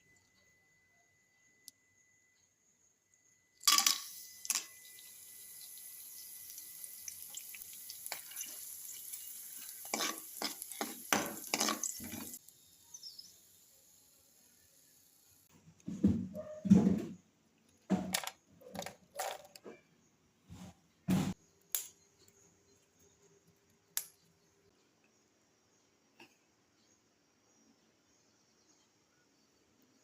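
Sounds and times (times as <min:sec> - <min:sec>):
kitchen tap running into sink: 0:03.7 - 0:12.4
dishes clattering: 0:09.8 - 0:12.4.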